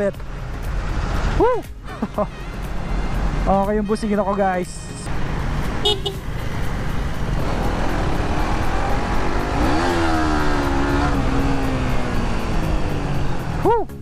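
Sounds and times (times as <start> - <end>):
motorcycle engine: 5.0 - 13.8.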